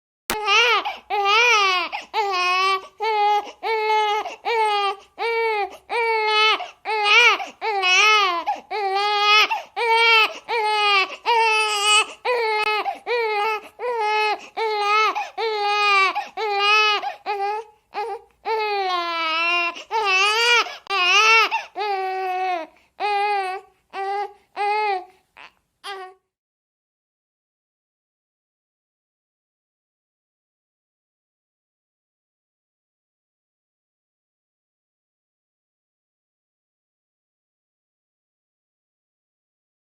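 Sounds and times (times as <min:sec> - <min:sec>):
infant crying: 0:00.3 - 0:26.4.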